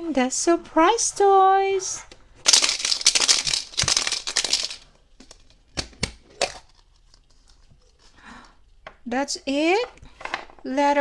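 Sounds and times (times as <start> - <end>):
plastic wrapping crinkling: 2.4 - 8.6
sharp plastic clicks: 2.5 - 6.8.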